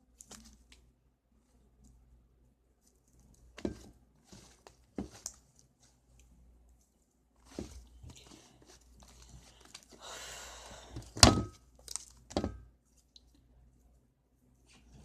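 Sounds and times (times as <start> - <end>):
slime squishing: 2.8 - 10.0, 11.0 - 13.5.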